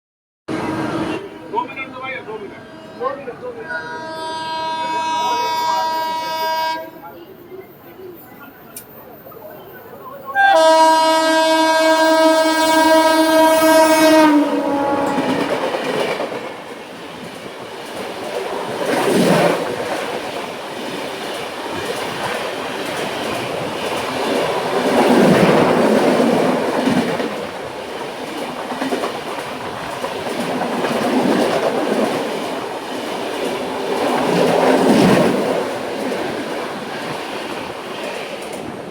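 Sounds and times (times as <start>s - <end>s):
train horn: 0.5s - 7.0s, 10.4s - 16.1s
train coaches rumbling past: 0.5s - 38.9s.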